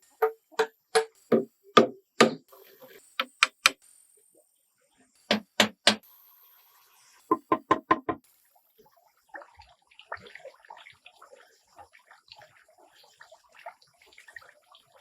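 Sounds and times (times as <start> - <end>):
hand tool knocking on wood: 0.2 - 2.4, 5.3 - 6.0, 7.3 - 8.2.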